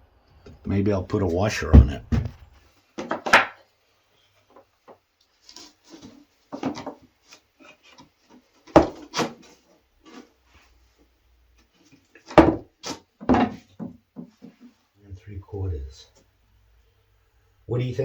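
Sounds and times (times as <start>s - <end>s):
wood strips knocking and clicking: 3.0s - 3.6s, 5.6s - 7.0s, 7.6s - 10.2s, 12.2s - 14.6s.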